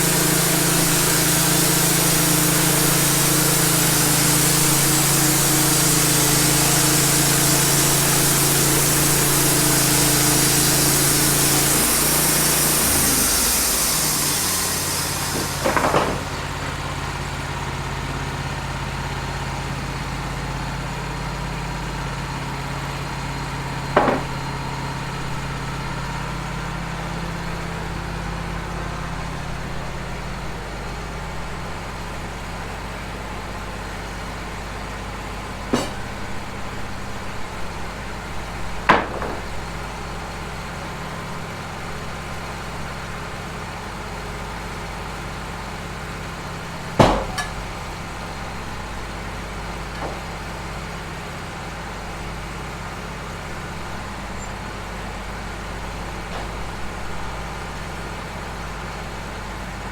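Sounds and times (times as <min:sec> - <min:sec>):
hiss: 0:00.0 - 0:17.0
sawmill engine running: 0:00.0 - 0:59.9
sharp knocks: 0:13.9 - 0:16.6, 0:23.9 - 0:24.6, 0:35.7 - 0:36.4, 0:38.9 - 0:39.7, 0:47.0 - 0:47.7.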